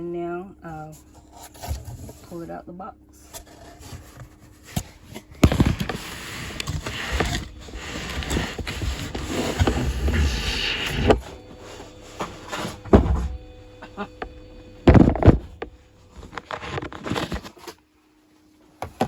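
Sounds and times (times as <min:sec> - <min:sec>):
cardboard scraping and rustling: 0:01.0 - 0:02.4, 0:03.1 - 0:13.4, 0:14.8 - 0:17.9
heavy thumps: 0:05.3 - 0:17.0.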